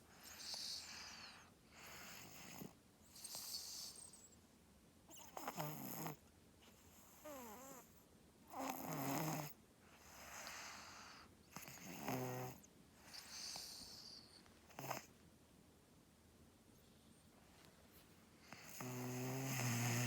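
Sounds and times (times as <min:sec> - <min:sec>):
girl snoring: 0:08.5 - 0:09.6, 0:11.6 - 0:12.6, 0:18.5 - 0:20.0.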